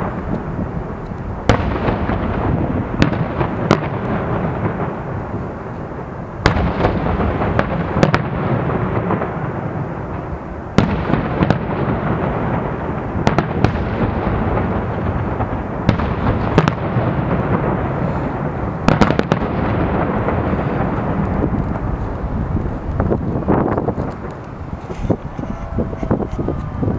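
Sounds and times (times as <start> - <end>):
low rumble and crackle: 0.0 - 26.9
firework shells bursting: 10.8 - 26.9.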